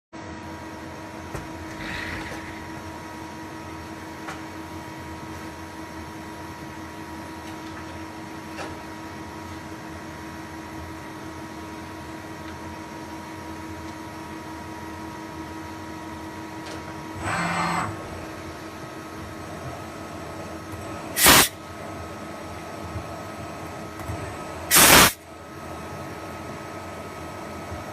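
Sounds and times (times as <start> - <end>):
machine hum with whine: 0.2 - 27.9
loud burst of noise: 21.1 - 21.6, 24.7 - 25.2
brief buzzing burst: 21.2 - 21.6, 24.7 - 25.2.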